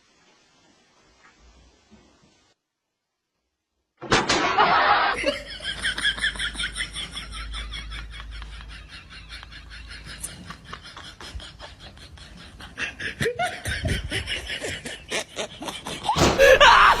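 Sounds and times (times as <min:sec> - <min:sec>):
laughter: 0:04.4 - 0:17.0.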